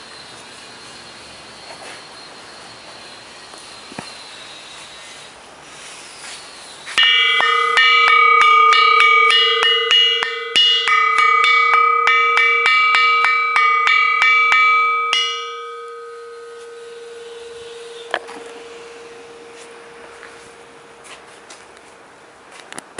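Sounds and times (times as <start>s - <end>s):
bronze bell ringing: 7.0s - 21.5s.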